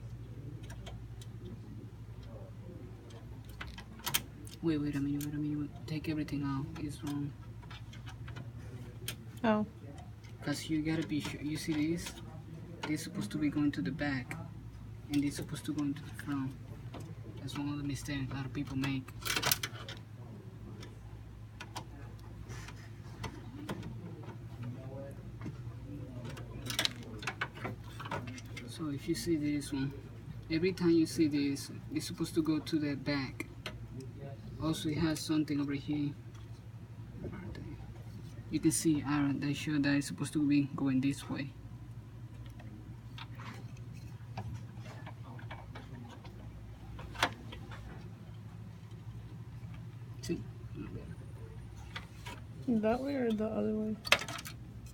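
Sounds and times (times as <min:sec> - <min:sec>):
steady low hum: 0:00.0 - 0:54.9
computer parts clicking and tapping: 0:00.1 - 0:01.6, 0:03.0 - 0:09.2, 0:09.9 - 0:14.4, 0:15.1 - 0:20.1, 0:20.7 - 0:28.7, 0:53.3 - 0:54.9
computer parts clicking and knocking: 0:16.9 - 0:20.0, 0:26.2 - 0:28.7, 0:54.0 - 0:54.9.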